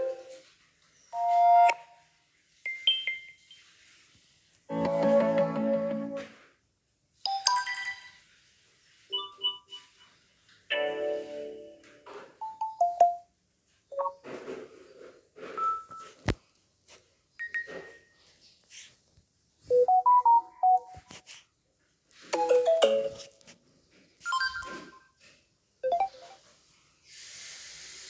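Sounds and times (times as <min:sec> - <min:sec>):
phone ringtone melodies: 0:12.4 - 0:13.2, 0:19.7 - 0:21.0.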